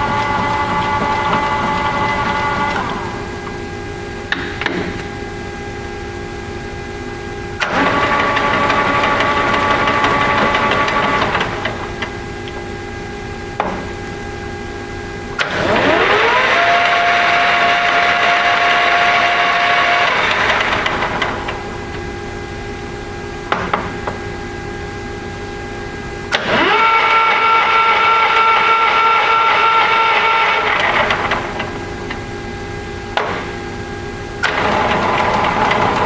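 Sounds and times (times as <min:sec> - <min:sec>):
lathe spindle whining: 0:00.0 - 0:03.6, 0:07.6 - 0:12.2, 0:15.4 - 0:22.0, 0:26.3 - 0:32.3, 0:34.4 - 0:36.0.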